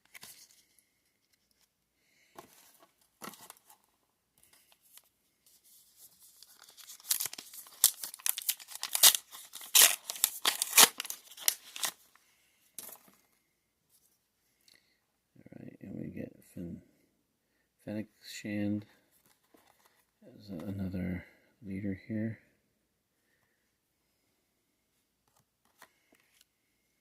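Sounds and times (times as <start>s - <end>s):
wrapper tearing and crinkling: 6.2s - 12.0s.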